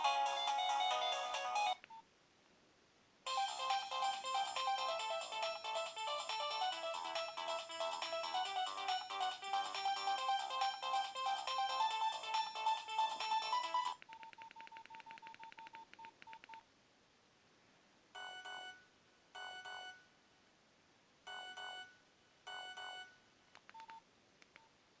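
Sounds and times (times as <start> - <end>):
mobile phone ringtone tune: 0.0 - 1.8, 3.3 - 15.8, 18.2 - 20.0, 21.3 - 23.2
faint clicks and beeps: 1.8 - 2.0, 13.9 - 16.7, 21.3 - 24.8.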